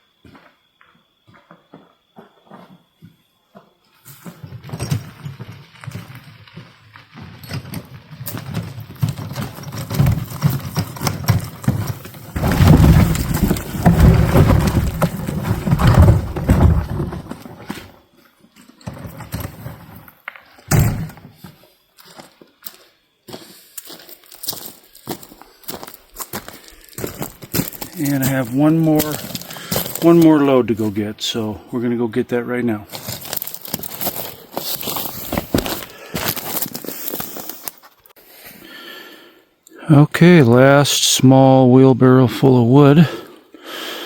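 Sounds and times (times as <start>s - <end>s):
wheelbarrow rumbling over ground: 4.0s - 18.1s, 18.8s - 21.4s, 26.3s - 38.0s
logs clattering onto woodpile: 7.3s - 18.0s, 25.1s - 30.4s, 32.9s - 38.0s
wood knocks: 11.3s - 17.4s.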